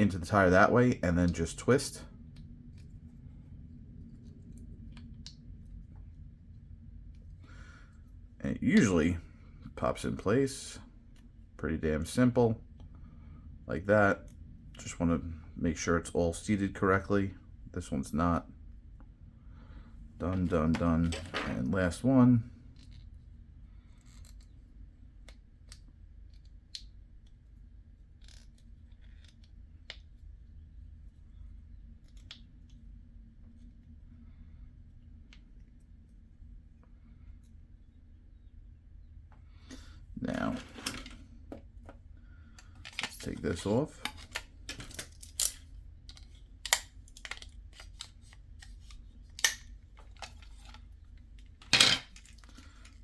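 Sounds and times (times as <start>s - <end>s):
plastic parts clicking: 42.6s - 50.8s.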